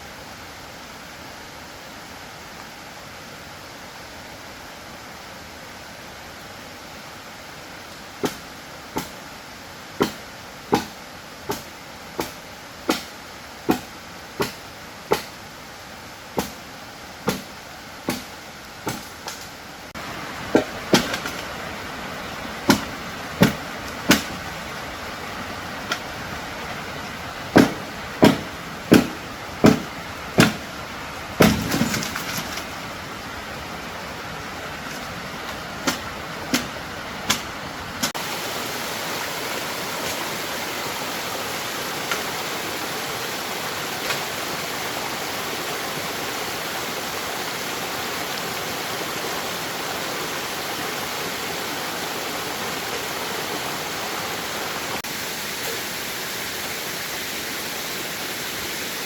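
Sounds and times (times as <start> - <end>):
hand tool striking wood: 9.0 - 9.2, 10.0 - 13.1, 13.7 - 15.4, 16.4 - 16.6, 17.2 - 17.5, 18.1 - 18.3, 18.9 - 19.4, 20.6 - 21.4, 22.7 - 24.4, 27.6 - 30.7, 31.4 - 32.6, 35.8 - 36.7.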